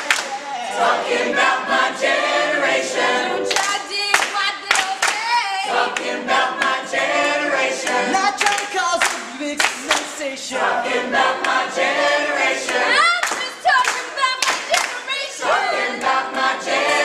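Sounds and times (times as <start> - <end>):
hand claps: 0.0 - 0.4, 3.5 - 5.4, 7.8 - 10.2, 12.7 - 15.0
group singing a capella: 0.0 - 17.0.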